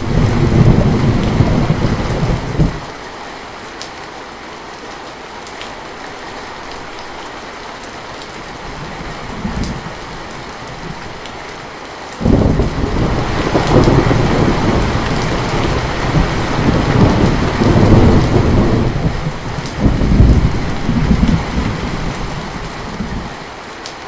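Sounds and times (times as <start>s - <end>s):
thunder rumbling: 0.0s - 2.9s, 8.6s - 11.2s, 12.2s - 23.4s
heavy rain falling: 0.0s - 24.0s.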